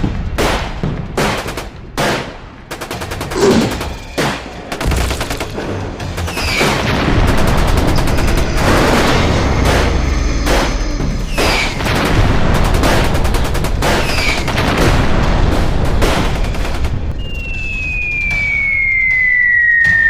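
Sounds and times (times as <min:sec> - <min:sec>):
machine-gun fire: 0:00.0 - 0:10.6, 0:11.4 - 0:17.1
steady low rumble: 0:07.3 - 0:11.3.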